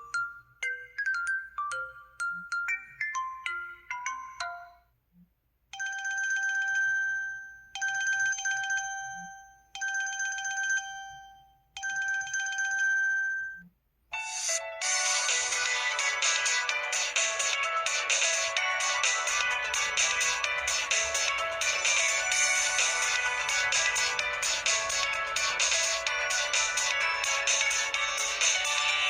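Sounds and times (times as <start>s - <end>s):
busier ringtone tune: 0.0s - 5.0s, 5.8s - 29.0s
plinking ringtone melody: 0.0s - 5.0s, 5.8s - 29.0s
two-tone electronic phone ring: 5.8s - 29.0s.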